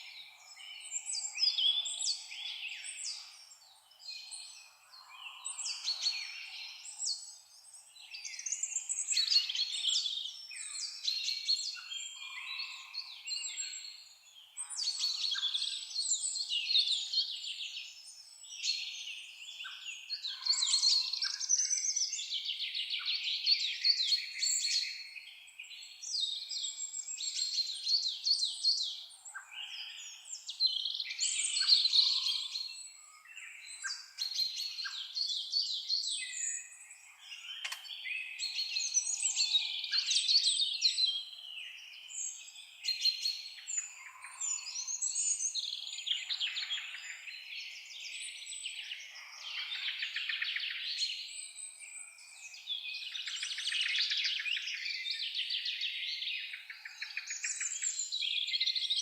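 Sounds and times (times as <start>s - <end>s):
songbirds trilling: 25.9s - 51.4s.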